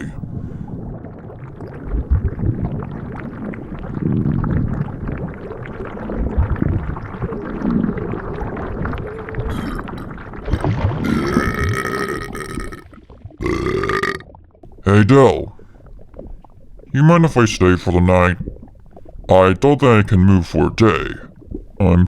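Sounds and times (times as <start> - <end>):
stomach gurgling and sloshing: 0.0 - 22.0
long burp: 9.5 - 14.3.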